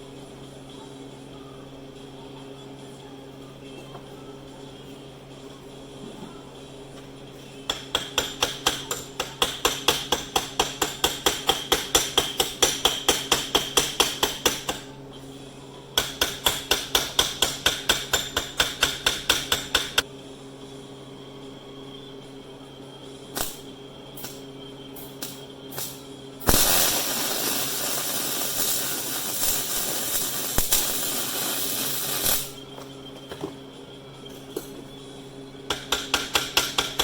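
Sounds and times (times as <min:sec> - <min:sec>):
steady low hum: 0:00.0 - 0:37.0
hammer tapping on metal: 0:07.7 - 0:14.8, 0:16.0 - 0:20.0, 0:35.7 - 0:37.0.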